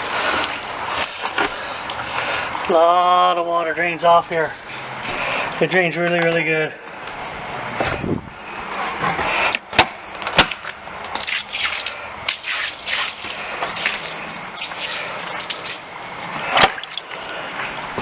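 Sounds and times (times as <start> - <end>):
water running and splashing: 0.0 - 5.4, 11.1 - 15.9, 16.6 - 18.0.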